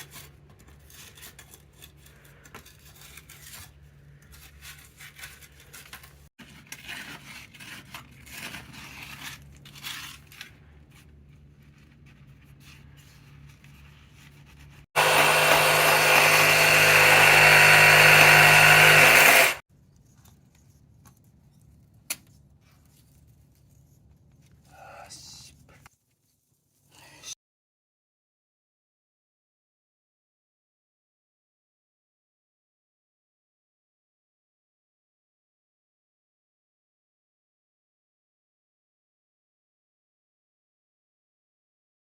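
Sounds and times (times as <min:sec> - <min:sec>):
scraping and handling noises: 0:00.0 - 0:15.7, 0:19.7 - 0:24.8
power tool running: 0:15.0 - 0:19.6.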